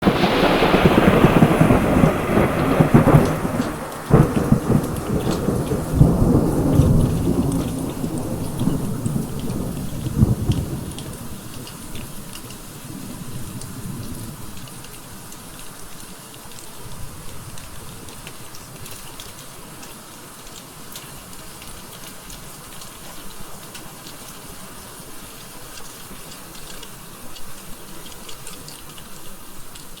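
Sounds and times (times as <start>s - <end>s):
thunder rumbling: 0.0s - 14.6s
rain pattering: 0.0s - 30.0s.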